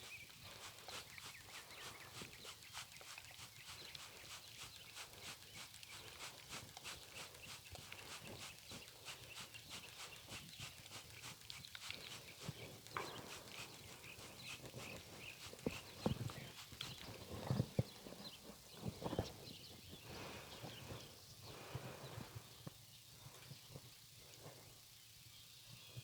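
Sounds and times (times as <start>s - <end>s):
horse hooves stepping and stamping: 0.0s - 19.4s.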